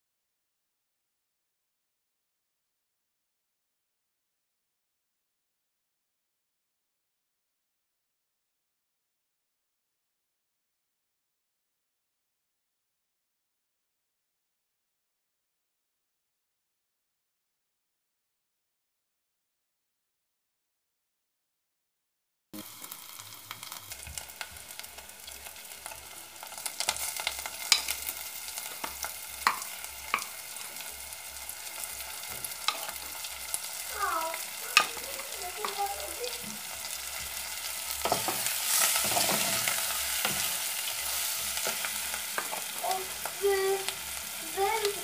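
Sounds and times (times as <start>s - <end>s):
food sizzling in a pan: 22.6s - 45.0s
spoon scraping a pan: 26.8s - 33.7s, 34.3s - 43.4s.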